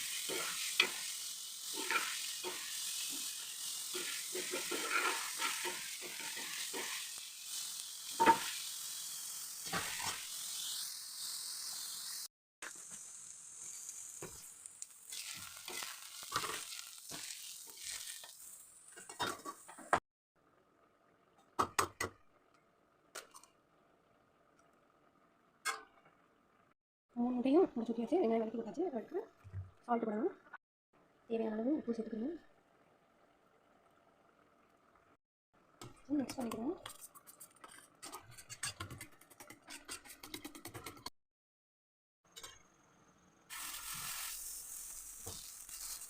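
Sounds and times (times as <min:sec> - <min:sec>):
food sizzling in a frying pan: 0:00.0 - 0:20.0, 0:43.5 - 0:46.0
spatula scraping and knocking: 0:36.5 - 0:41.1.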